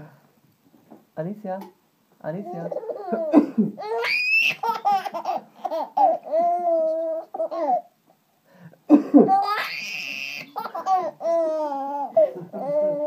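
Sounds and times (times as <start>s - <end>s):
baby laughing in squeals: 2.5s - 7.9s, 9.3s - 13.0s.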